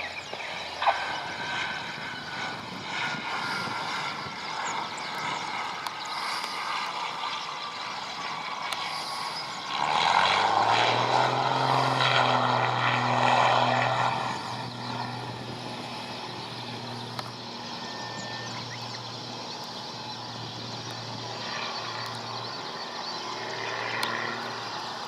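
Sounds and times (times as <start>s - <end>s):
propeller airplane passing: 0.0s - 25.0s.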